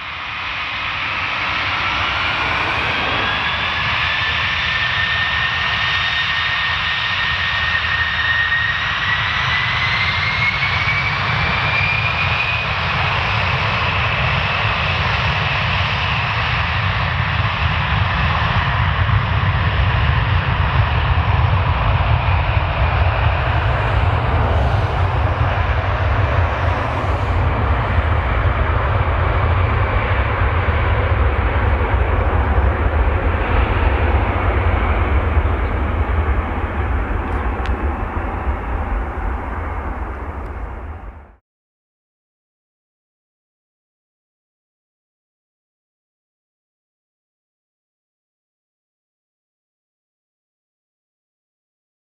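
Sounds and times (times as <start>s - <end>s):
jet engine whine rising: 0.0s - 41.4s
jet engines roaring: 0.0s - 41.4s.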